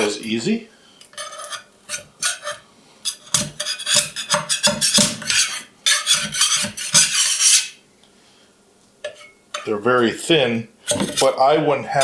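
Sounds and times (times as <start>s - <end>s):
scraper rasping on metal plate: 1.2s - 7.8s.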